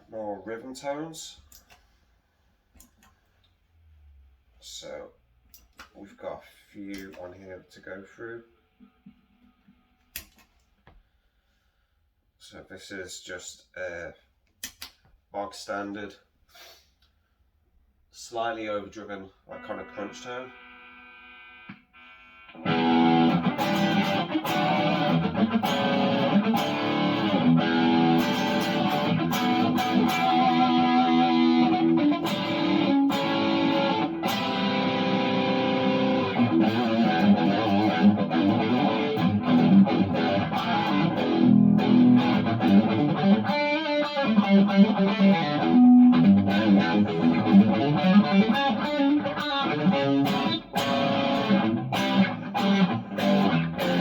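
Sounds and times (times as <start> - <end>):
overdriven electric guitar chords: 19.5 - 54.0.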